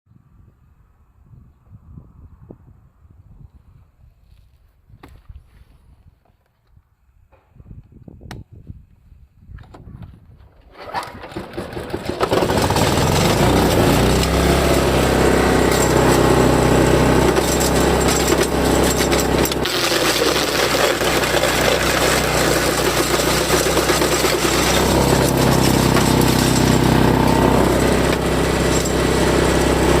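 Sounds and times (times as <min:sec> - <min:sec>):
wood chipper engine running: 0:10.8 - 0:30.0.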